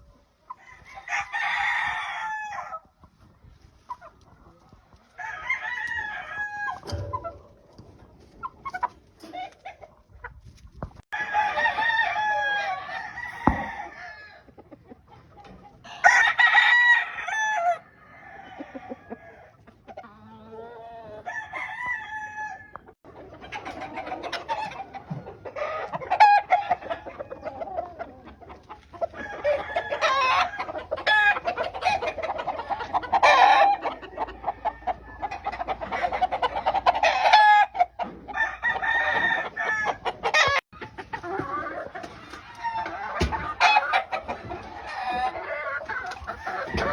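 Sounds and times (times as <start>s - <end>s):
chickens clucking: 0.0s - 16.2s, 17.3s - 46.9s
roosters crowing: 0.5s - 2.9s, 5.1s - 7.5s, 11.1s - 14.5s, 15.8s - 19.5s, 20.5s - 22.8s, 25.6s - 27.7s, 29.0s - 40.6s, 41.3s - 46.9s.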